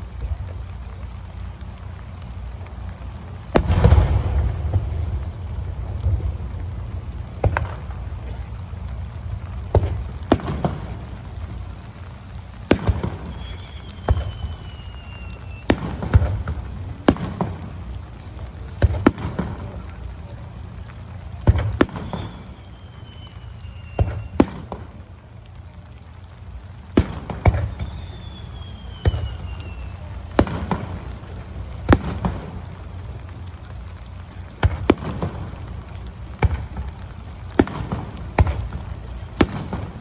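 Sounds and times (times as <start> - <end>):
fireworks booming: 0.0 - 40.0
rain hissing: 0.0 - 40.0
whistle falling in pitch: 13.2 - 15.8, 21.9 - 24.4, 27.6 - 30.2.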